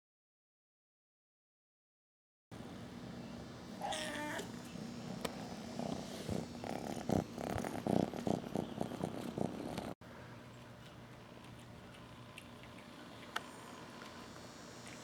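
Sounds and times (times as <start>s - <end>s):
kitten meowing: 3.8s - 4.5s
kitten purring: 3.8s - 10.0s.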